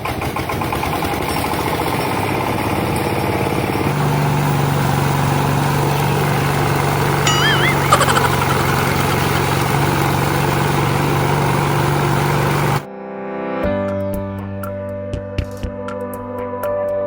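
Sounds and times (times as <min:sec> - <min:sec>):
harvesting machine engine running: 0:00.1 - 0:07.3, 0:08.2 - 0:12.8
short warbling high tone: 0:07.3 - 0:09.1.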